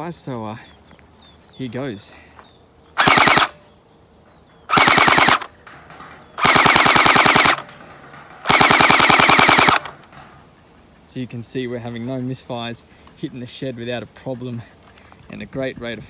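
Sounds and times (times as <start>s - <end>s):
gel blaster automatic fire: 3.0s - 3.6s, 4.7s - 5.5s, 6.4s - 7.7s, 8.4s - 9.9s.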